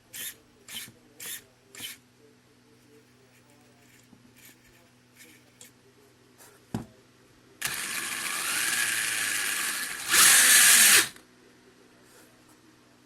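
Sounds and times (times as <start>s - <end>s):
rc car electric motor whirring: 7.6s - 11.2s.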